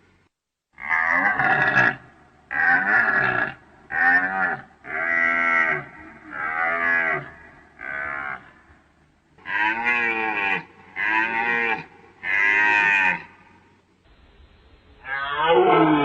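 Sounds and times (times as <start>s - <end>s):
deer bellowing calls: 0.8s - 13.6s.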